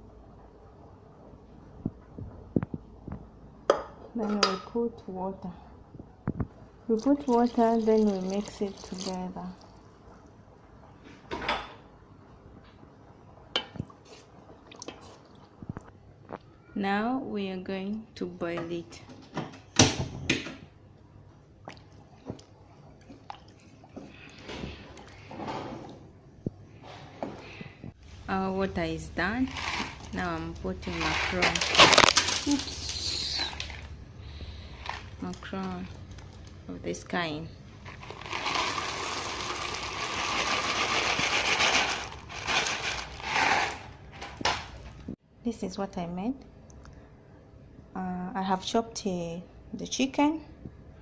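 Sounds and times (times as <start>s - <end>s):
dry pasta pouring and rattling: 6.9s - 9.8s, 29.4s - 33.9s, 37.8s - 44.0s
water sloshing in a pot: 6.9s - 10.2s.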